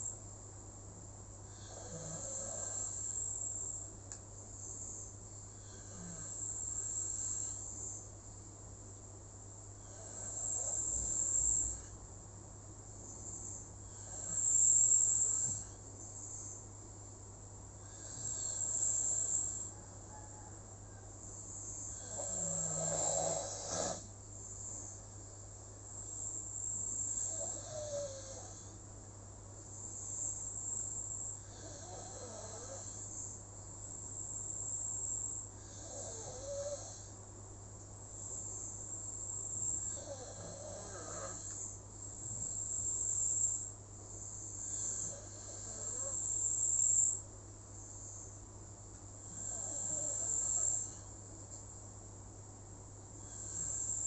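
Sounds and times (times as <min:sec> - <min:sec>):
person snoring: 0:01.5 - 0:03.3, 0:05.6 - 0:07.7, 0:09.8 - 0:11.9, 0:13.9 - 0:15.7, 0:17.8 - 0:19.7, 0:21.5 - 0:24.1, 0:26.9 - 0:28.7, 0:31.4 - 0:33.1, 0:39.8 - 0:41.6, 0:44.5 - 0:46.4, 0:49.3 - 0:51.1, 0:53.2 - 0:54.0
crickets chirping: 0:01.6 - 0:08.1, 0:09.9 - 0:12.0, 0:13.0 - 0:16.7, 0:17.8 - 0:25.1, 0:25.9 - 0:28.8, 0:29.6 - 0:37.2, 0:38.0 - 0:48.6, 0:49.2 - 0:51.2, 0:53.1 - 0:54.0.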